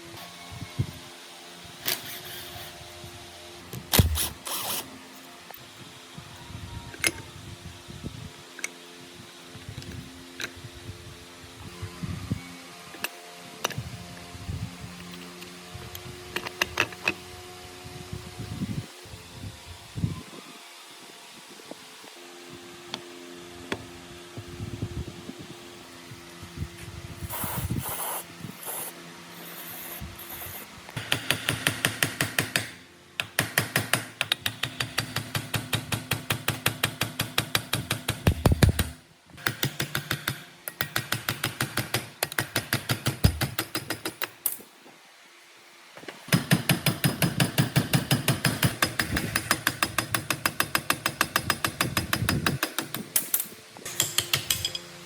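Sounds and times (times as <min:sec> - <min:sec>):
rapid mechanical clicking: 0:31.0 - 0:44.6.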